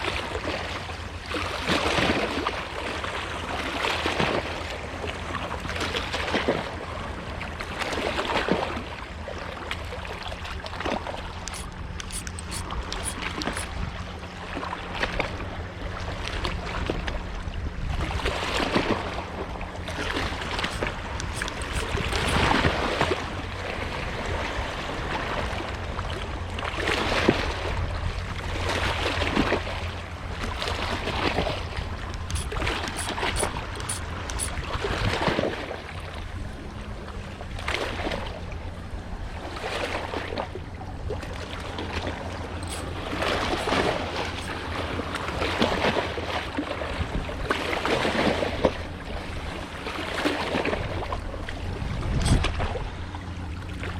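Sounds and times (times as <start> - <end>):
low steady hum: 0.0 - 53.9
water lapping against boat hull: 0.0 - 53.9.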